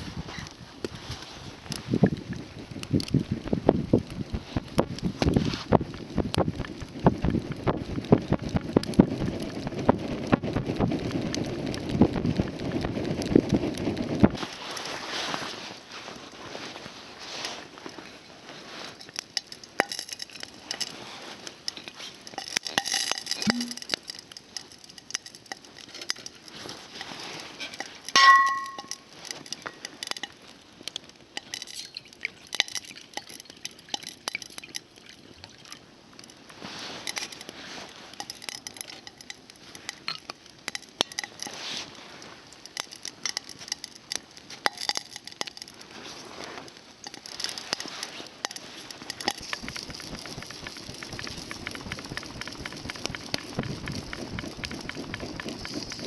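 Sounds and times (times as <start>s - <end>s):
campfire crackling and popping: 0.0s - 56.0s
cooking utensils clinking: 27.6s - 29.9s
loud ringing metallic clink: 28.2s - 29.0s.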